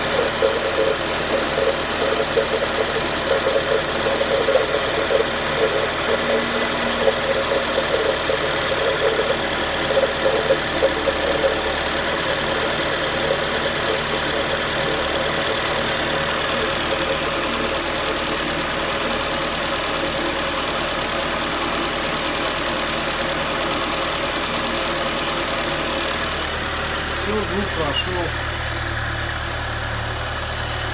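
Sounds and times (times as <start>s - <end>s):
car engine idling with knock: 0.0s - 30.9s.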